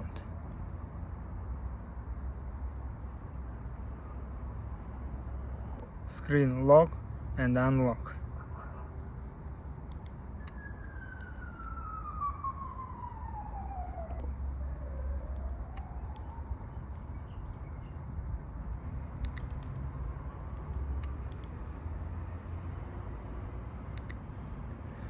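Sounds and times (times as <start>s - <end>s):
low rumble of road traffic: 0.0s - 25.0s
short clicks: 9.8s - 10.6s, 19.2s - 19.9s, 20.5s - 21.6s, 23.9s - 24.3s
emergency siren wailing: 10.4s - 18.2s.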